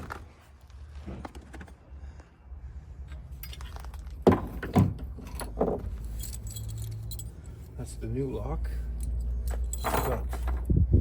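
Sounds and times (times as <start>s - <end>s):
keys and metal lock parts clinking: 3.3s - 4.2s, 5.2s - 7.8s, 8.8s - 10.7s.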